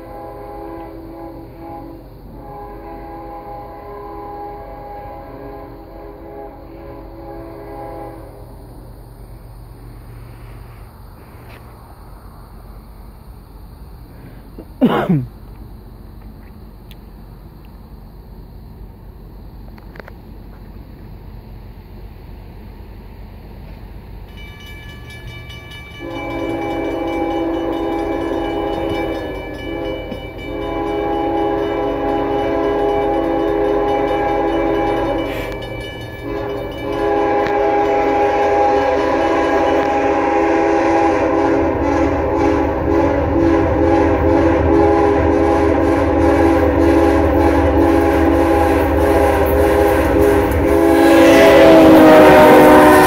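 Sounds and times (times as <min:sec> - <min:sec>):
locomotive air horn blasts: 0:00.0 - 0:08.4, 0:26.0 - 0:53.0
locomotive engine rumble: 0:00.0 - 0:53.0
wheel clatter on rails: 0:23.6 - 0:37.6.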